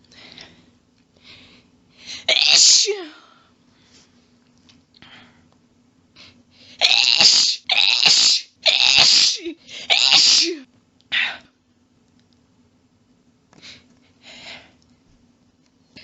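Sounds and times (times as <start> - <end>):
person sneezing: 2.1 - 3.2, 6.8 - 11.5.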